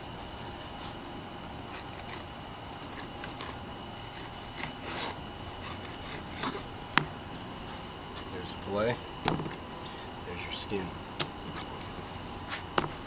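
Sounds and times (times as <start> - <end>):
steady background hum: 0.0 - 13.0
knife scraping fish skin: 1.6 - 6.7.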